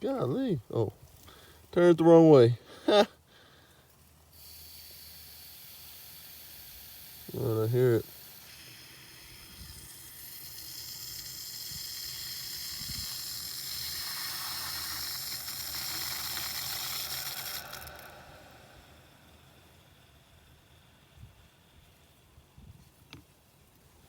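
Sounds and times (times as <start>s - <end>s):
water hissing through pipe: 4.3s - 22.9s.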